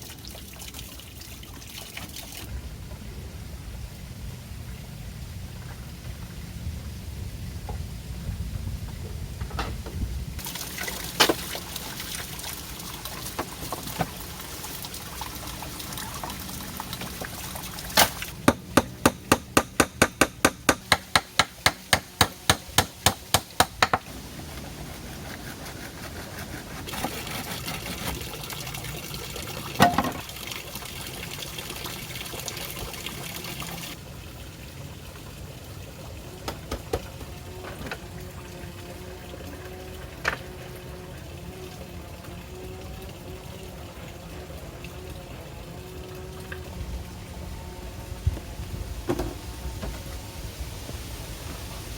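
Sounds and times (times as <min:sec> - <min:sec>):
flowing water: 0:00.0 - 0:51.9
sharp knocks: 0:18.4 - 0:24.1.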